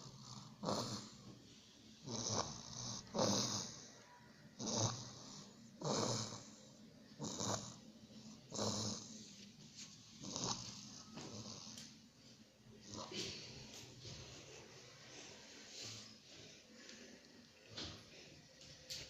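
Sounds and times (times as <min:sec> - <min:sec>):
person snoring: 0:00.0 - 0:01.3, 0:02.0 - 0:04.0, 0:04.6 - 0:07.8, 0:08.4 - 0:09.2, 0:10.2 - 0:11.8.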